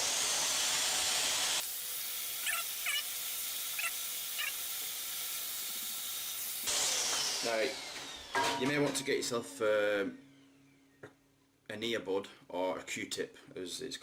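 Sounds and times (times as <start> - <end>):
vacuum cleaner running: 0.0 - 1.9, 6.6 - 9.0.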